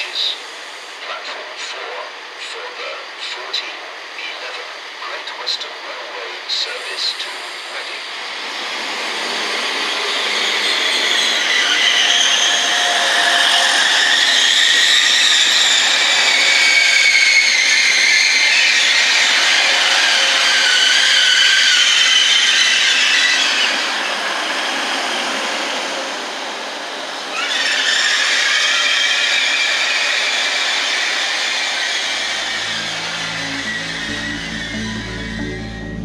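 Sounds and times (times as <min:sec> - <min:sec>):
train running: 0:00.0 - 0:36.0
high wavering squeals: 0:06.6 - 0:24.2, 0:27.3 - 0:36.0.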